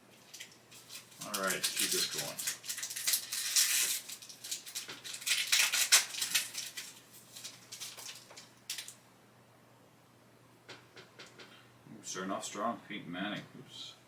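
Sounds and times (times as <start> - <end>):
foil wrapper crinkling and rustling: 0.1 - 9.0.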